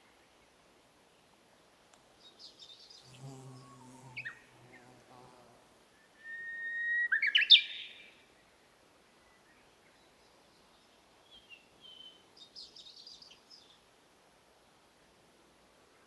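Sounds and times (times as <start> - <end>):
bird whistle song: 6.1 - 8.2.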